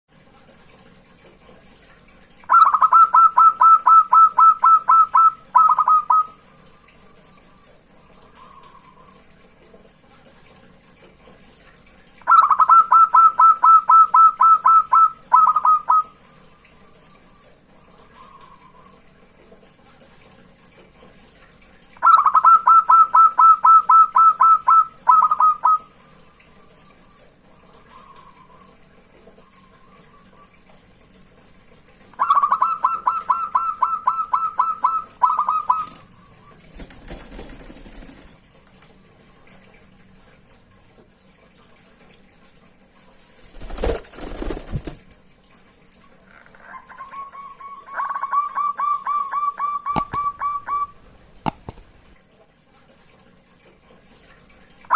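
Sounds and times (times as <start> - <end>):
dove cooing song: 2.5 - 6.5, 12.2 - 16.2, 22.0 - 25.9, 32.2 - 36.6, 46.4 - 51.0.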